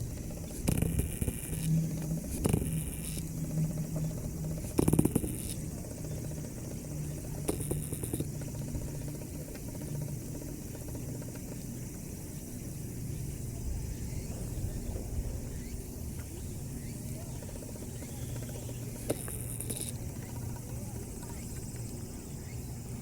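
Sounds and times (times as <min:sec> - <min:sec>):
short bursts of noise: 0:00.0 - 0:05.7, 0:18.9 - 0:20.0
low engine-like hum: 0:00.0 - 0:23.0.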